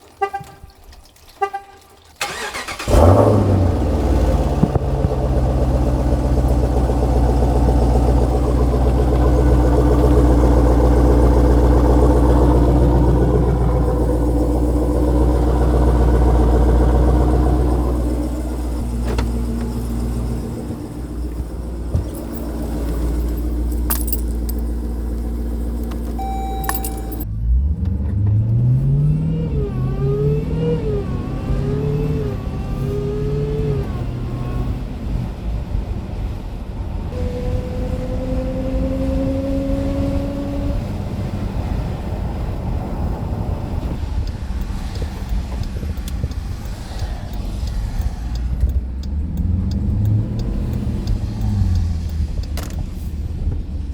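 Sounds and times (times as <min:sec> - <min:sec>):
car engine starting and idling: 0:00.0 - 0:53.9
chime-like tones: 0:26.2 - 0:27.2.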